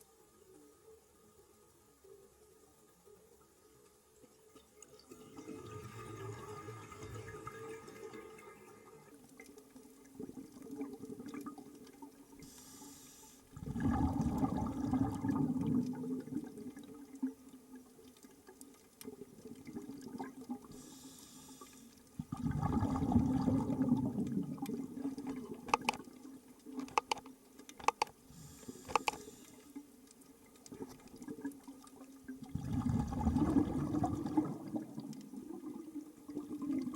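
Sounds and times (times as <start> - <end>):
regulator inhale hiss: 12.4 - 13.5, 20.7 - 22.0, 28.3 - 29.8
exhaled bubbles rumbling: 13.6 - 17.4, 22.2 - 25.7, 32.3 - 36.9
sharp clicks: 25.7 - 26.0, 26.8 - 28.2, 28.8 - 29.3.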